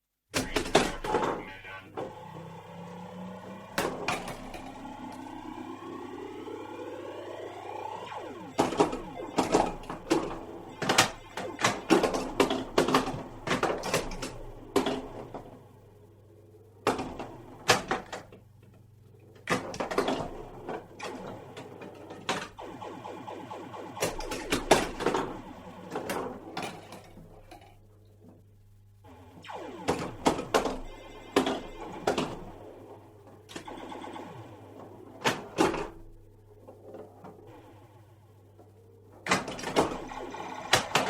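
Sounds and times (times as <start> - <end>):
pinball flippers and bumpers clacking: 0.4 - 15.7, 16.8 - 22.6, 24.0 - 27.8, 29.9 - 37.6, 39.1 - 41.0
rising tone: 2.1 - 11.6.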